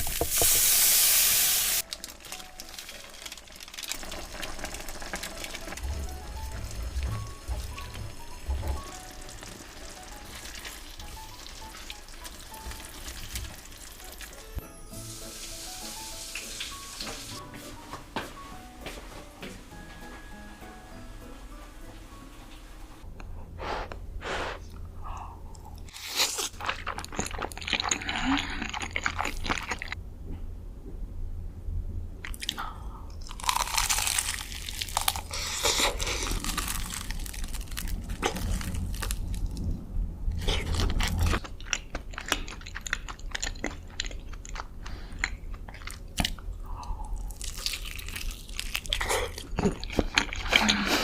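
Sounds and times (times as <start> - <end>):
crunching and chewing crisp food: 25.8 - 30.0, 32.2 - 39.7, 40.3 - 51.0.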